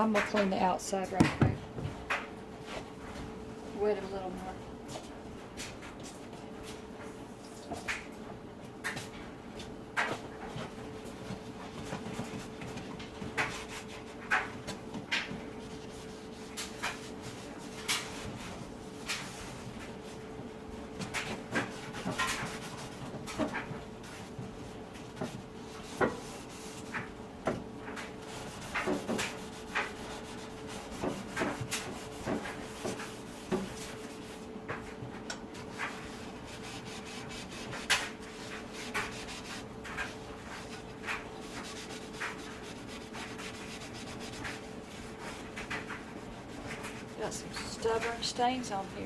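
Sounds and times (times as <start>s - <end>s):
faint steady hum: 24.0s - 49.0s
rubbing and scraping strokes: 27.9s - 34.5s, 35.6s - 49.0s.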